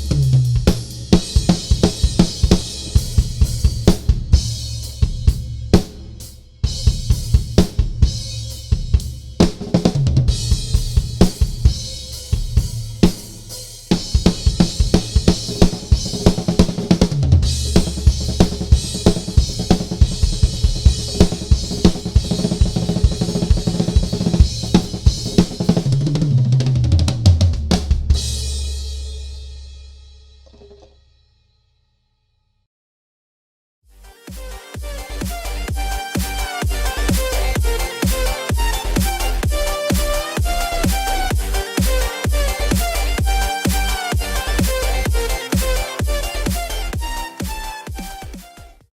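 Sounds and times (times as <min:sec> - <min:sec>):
cymbal and hi-hat wash: 0:00.0 - 0:26.1, 0:34.3 - 0:48.5
bass drum: 0:00.0 - 0:31.0, 0:34.3 - 0:48.8
snare drum strokes: 0:43.6 - 0:48.6.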